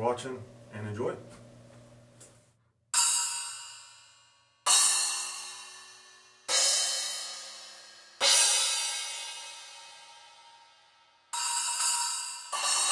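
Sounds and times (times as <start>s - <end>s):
splash cymbal crashes: 4.7s - 10.8s, 11.4s - 12.9s.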